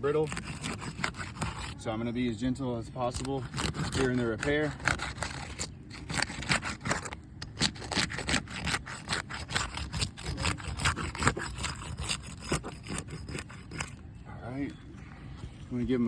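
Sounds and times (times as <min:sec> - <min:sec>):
tool scraping shingles: 0:00.0 - 0:01.8, 0:03.0 - 0:14.0.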